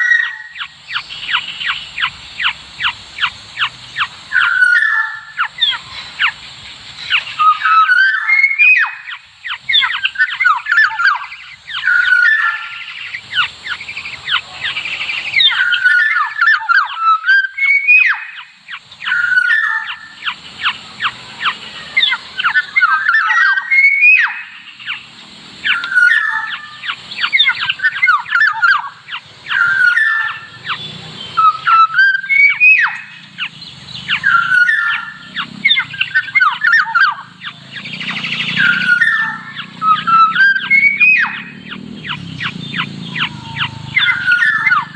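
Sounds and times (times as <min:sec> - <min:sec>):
bird fledgling harsh calls: 0:00.0 - 0:44.9.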